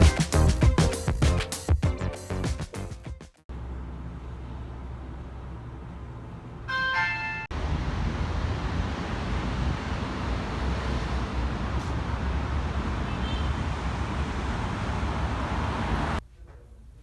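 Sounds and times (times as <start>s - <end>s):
rumbling road traffic: 3.5s - 16.2s.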